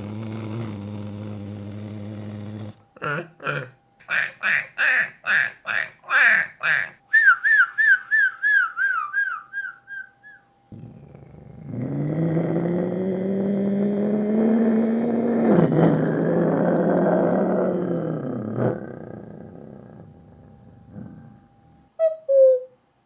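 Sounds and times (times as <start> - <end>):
man imitating car engine: 0.0 - 10.4
man imitating police siren: 4.3 - 10.4.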